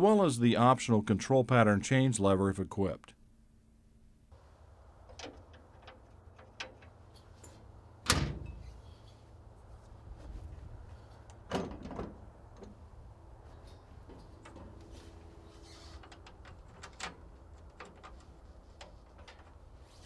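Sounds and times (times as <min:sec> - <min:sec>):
latch clicks: 0:08.0 - 0:08.6
metal doors banging shut: 0:08.0 - 0:08.8, 0:11.4 - 0:12.8.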